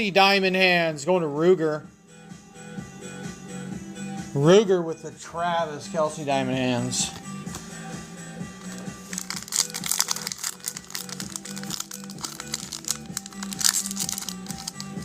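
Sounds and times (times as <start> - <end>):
background music: 0.0 - 15.0
wrappers tearing and crinkling: 8.6 - 15.0.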